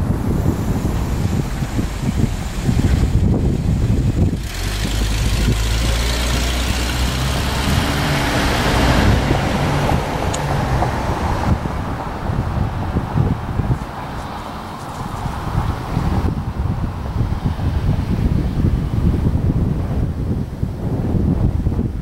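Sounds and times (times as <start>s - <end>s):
rushing tyre noise: 0.0s - 22.0s
vehicle engine hum: 0.0s - 22.0s
wind buffeting microphone: 0.0s - 22.0s.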